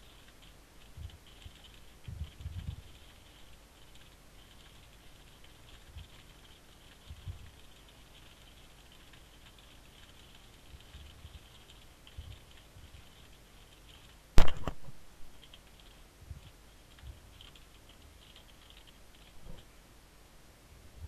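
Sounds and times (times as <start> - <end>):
fast keyboard typing: 0.0 - 14.2, 15.4 - 19.6
loud sharp knock: 14.4 - 14.8.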